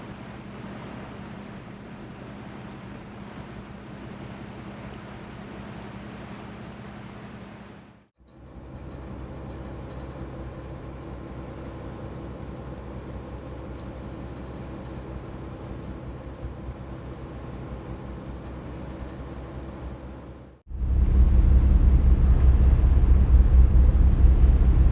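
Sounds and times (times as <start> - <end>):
diesel engine drone: 8.2 - 24.9.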